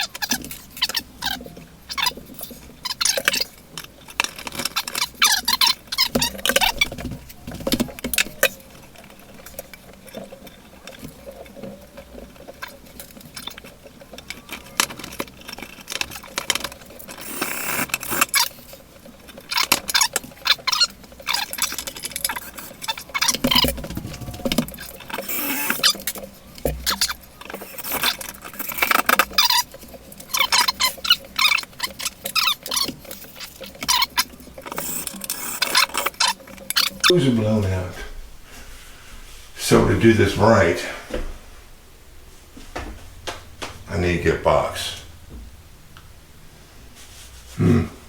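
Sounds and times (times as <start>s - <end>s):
hand tools clicking and rattling: 0.0s - 37.2s.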